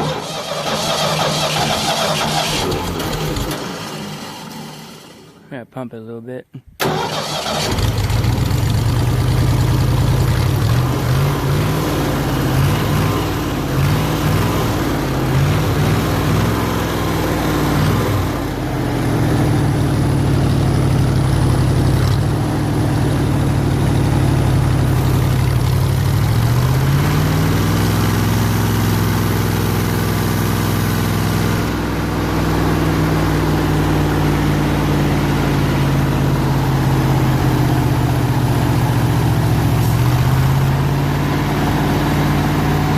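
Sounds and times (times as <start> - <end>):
air compressor engine running: 0.0 - 5.4.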